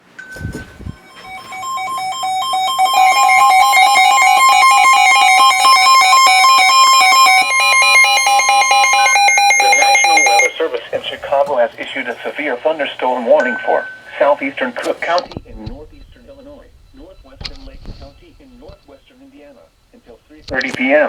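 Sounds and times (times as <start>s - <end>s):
shrill electronic alert tones: 0.3s - 10.6s.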